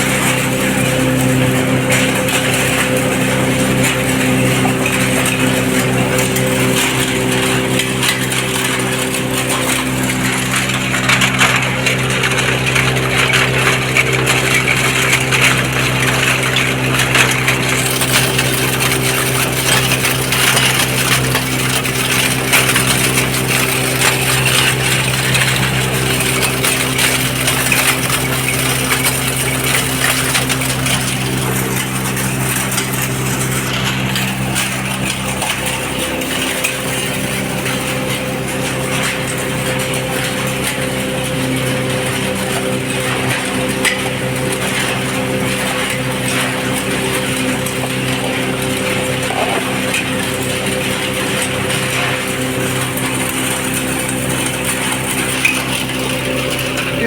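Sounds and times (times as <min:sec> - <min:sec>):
metal pieces clinking and rattling: 0:17.7 - 0:38.2.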